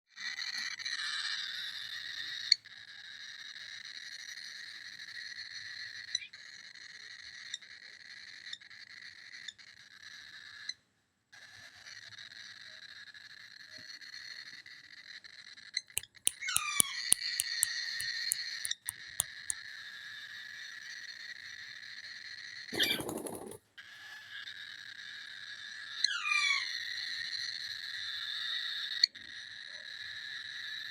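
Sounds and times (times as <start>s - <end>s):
sharp clicks: 16.0s - 19.0s.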